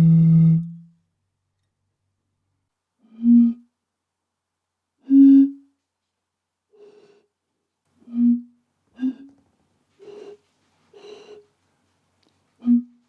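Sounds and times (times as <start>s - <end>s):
hooting notes blown across bottles: 0.0s - 0.7s, 5.0s - 5.6s.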